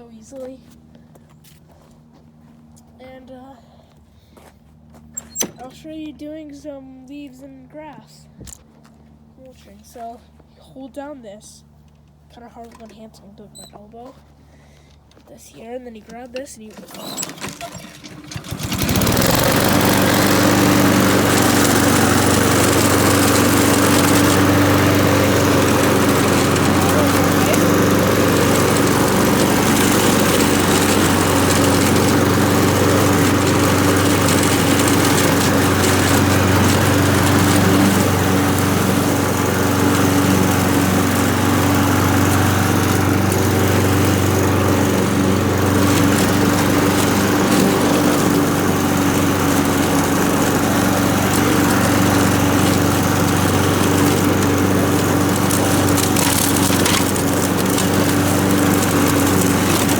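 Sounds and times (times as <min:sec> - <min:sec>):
lawn mower engine running: 0:16.1 - 0:59.9.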